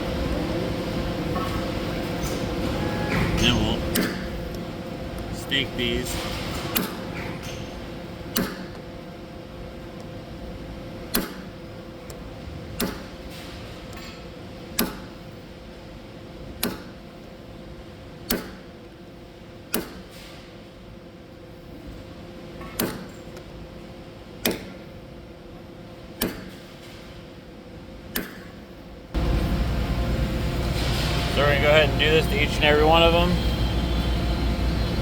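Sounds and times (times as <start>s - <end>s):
steady hum: 0.0s - 13.7s, 27.4s - 35.0s.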